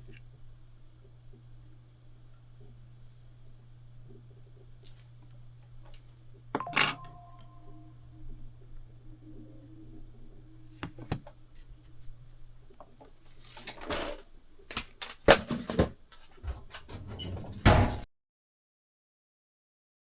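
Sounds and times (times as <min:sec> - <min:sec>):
low steady hum: 0:00.0 - 0:17.9
small objects handled: 0:10.7 - 0:16.4.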